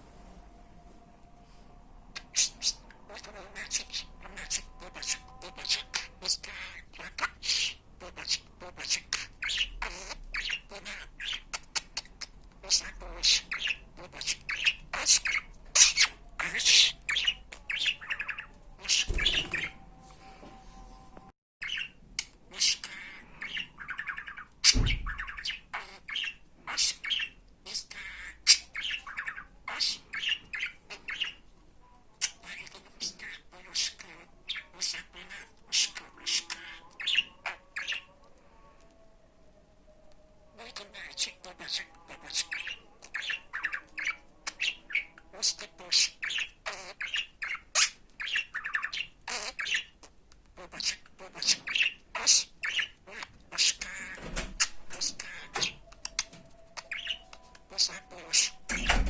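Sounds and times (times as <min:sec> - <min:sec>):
budgerigar chattering: 0:02.2 - 0:19.7, 0:40.6 - 0:59.0.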